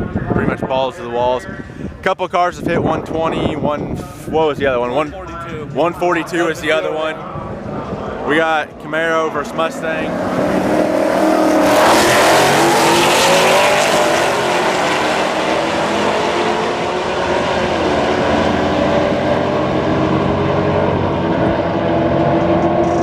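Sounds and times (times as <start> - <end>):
car engines at full throttle: 7.0 - 23.0.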